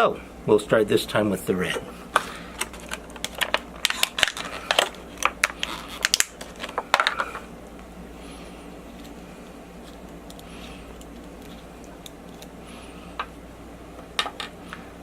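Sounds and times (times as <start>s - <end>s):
small parts clicking and rattling: 2.6s - 7.4s.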